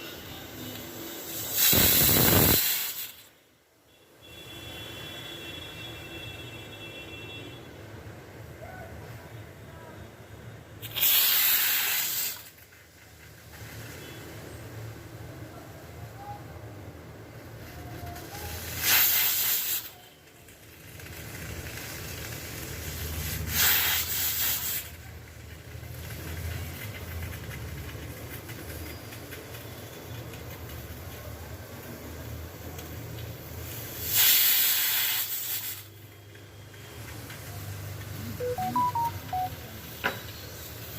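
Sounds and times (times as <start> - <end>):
pressure cooker whistle hissing: 0.0 - 3.1, 10.8 - 12.4.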